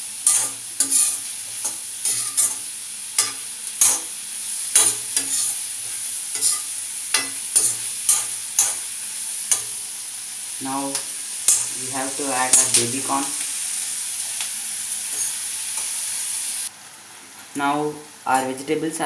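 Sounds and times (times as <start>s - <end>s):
vegetables sizzling in butter: 0.0s - 19.0s
utensil scraping a pan: 0.2s - 2.6s, 4.7s - 8.8s.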